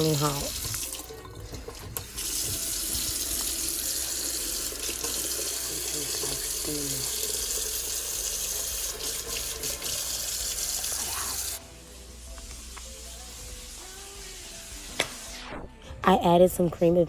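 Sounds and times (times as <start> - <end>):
water running from a tap: 0.0 - 11.6.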